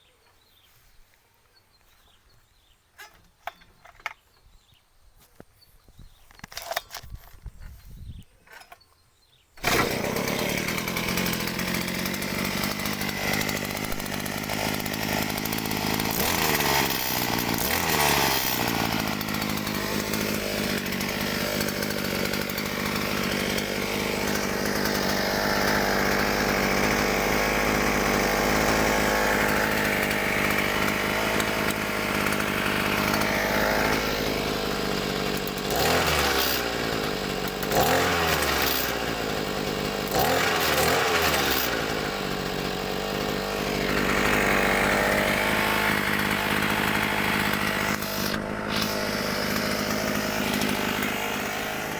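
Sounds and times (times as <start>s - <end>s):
outboard motor revving: 9.6s - 51.9s.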